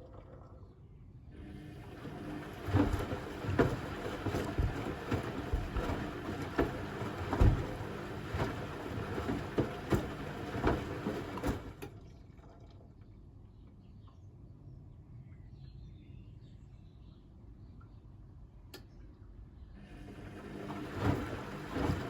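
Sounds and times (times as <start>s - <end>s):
washing machine churning: 1.4s - 12.5s, 19.8s - 22.0s
heavy thuds in washing machine drum: 2.0s - 11.8s, 20.8s - 22.0s.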